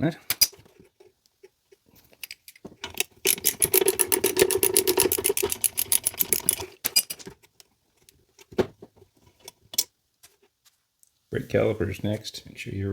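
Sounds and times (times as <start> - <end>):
socket ratchet clicking: 2.2 - 7.2.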